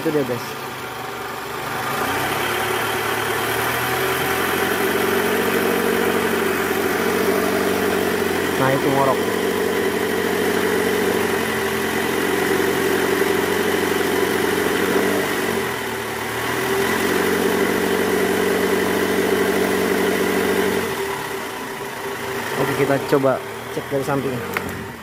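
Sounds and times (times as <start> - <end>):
car engine idling: 0.0 - 25.0.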